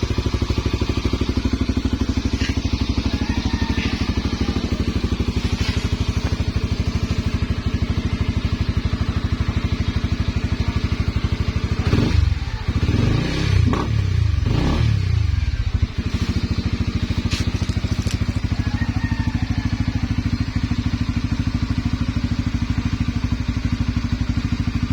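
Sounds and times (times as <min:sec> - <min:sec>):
motorcycle engine idling: 0:00.0 - 0:24.9.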